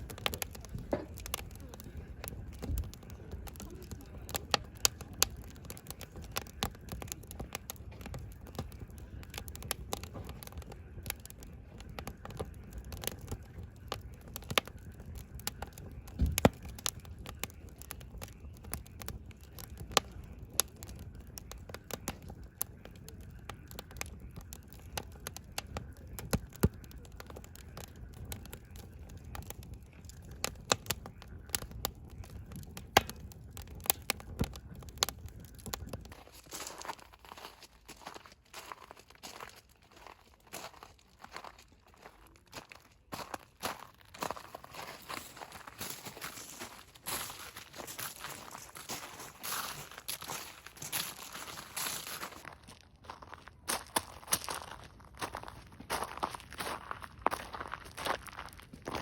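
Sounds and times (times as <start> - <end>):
flame rushing: 0.0 - 36.2
firewood crackling and popping: 0.0 - 59.0.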